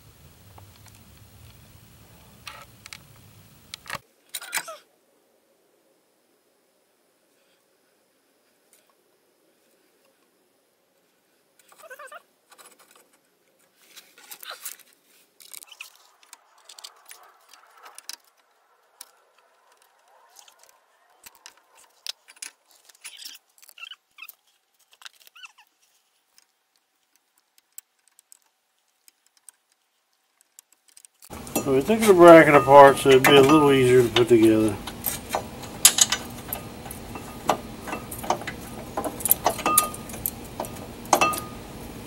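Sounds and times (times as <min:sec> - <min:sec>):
metal tools clinking and rattling: 0:31.3 - 0:41.6.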